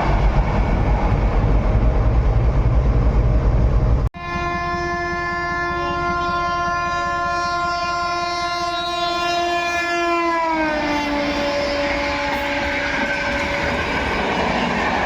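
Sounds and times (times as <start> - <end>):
passing train rumble: 0.0 - 15.0
locomotive horn blast: 4.2 - 13.9.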